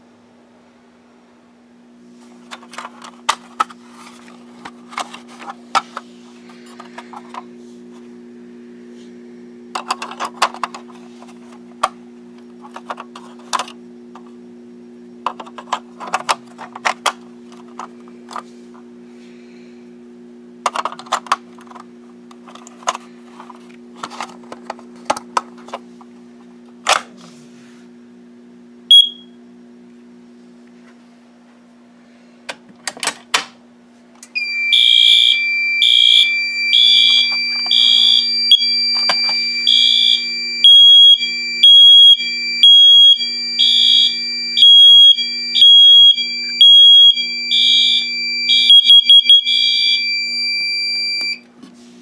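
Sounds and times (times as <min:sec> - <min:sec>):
steady low hum: 0:00.0 - 0:52.0
smoke alarm beep: 0:28.9 - 0:29.4, 0:34.4 - 0:51.4.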